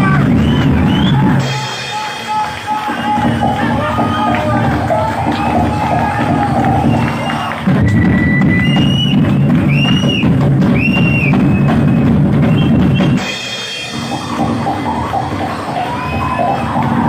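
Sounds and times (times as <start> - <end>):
drum kit played hard: 0.0 - 17.0.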